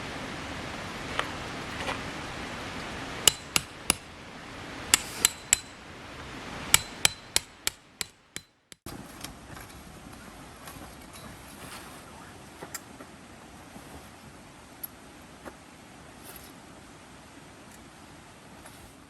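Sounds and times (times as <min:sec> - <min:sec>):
steady hiss: 0:00.0 - 0:08.4
hammer striking tent pegs: 0:03.3 - 0:04.2, 0:04.9 - 0:05.8, 0:06.7 - 0:08.9.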